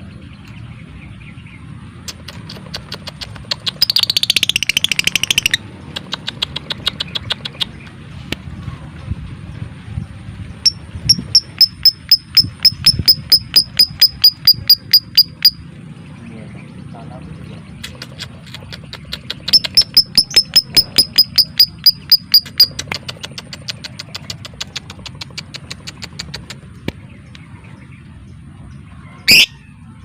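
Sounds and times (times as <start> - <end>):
lovebird chirping: 2.0 - 7.9, 10.6 - 15.7, 17.8 - 27.8.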